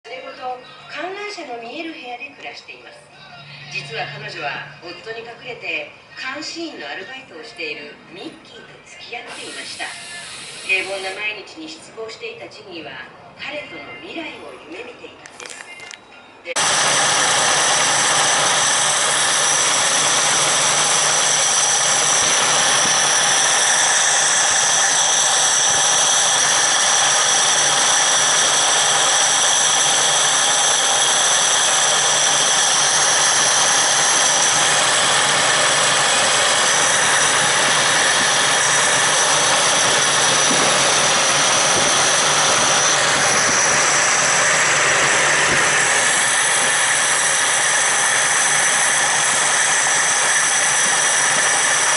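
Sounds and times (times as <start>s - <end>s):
high-pitched whine: 8.8s - 11.4s, 15.6s - 51.9s.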